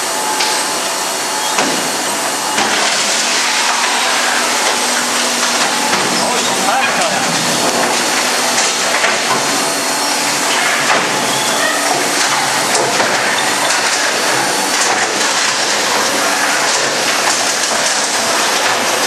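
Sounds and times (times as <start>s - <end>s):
shredder crunching plastic: 1.5s - 19.0s.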